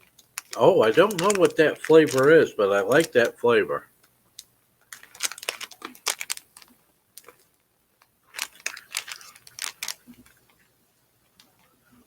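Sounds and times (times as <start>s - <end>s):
plastic package crinkling: 0.0s - 3.5s, 4.8s - 10.7s.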